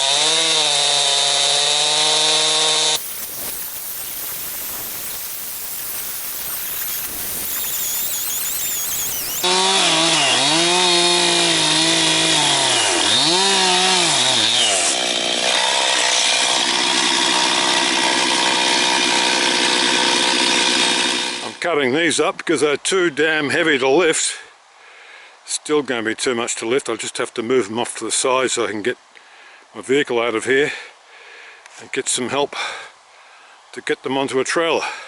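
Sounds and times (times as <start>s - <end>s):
chainsaw cutting log: 0.0s - 21.6s.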